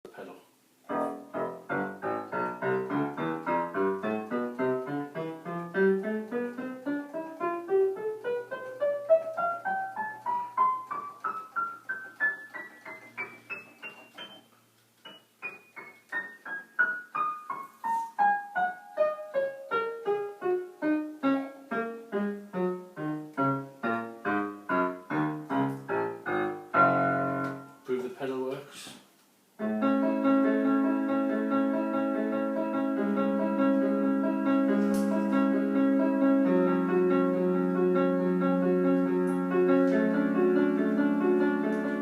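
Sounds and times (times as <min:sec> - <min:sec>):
electric piano notes: 0:00.8 - 0:28.1, 0:29.6 - 0:42.0.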